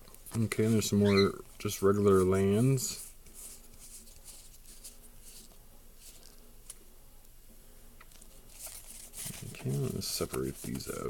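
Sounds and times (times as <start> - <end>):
cards rustling: 8.1 - 11.0.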